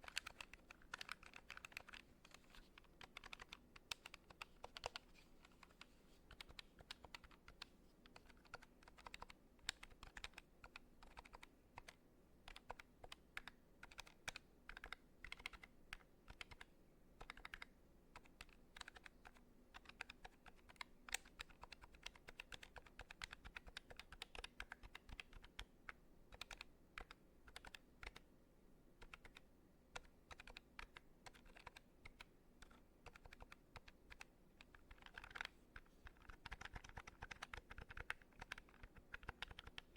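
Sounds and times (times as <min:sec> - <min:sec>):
buttons clicking rapidly: 0:30.3 - 0:39.9.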